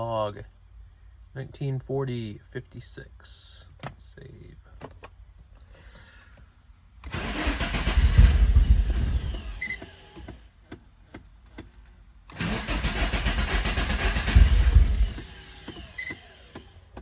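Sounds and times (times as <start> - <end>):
car engine cranking: 7.0 - 10.5, 12.3 - 17.0.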